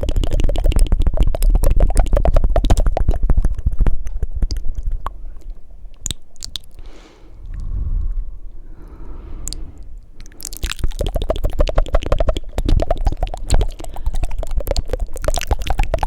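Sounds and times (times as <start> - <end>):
tongue fluttering mouth clicks: 0.0 - 8.6, 9.2 - 16.0
low breathy rumble: 6.7 - 11.0.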